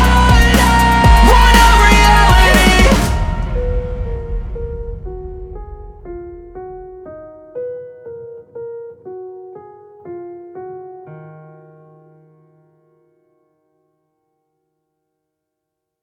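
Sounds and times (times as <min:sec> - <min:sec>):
electric piano melody: 0:06.6 - 0:13.5.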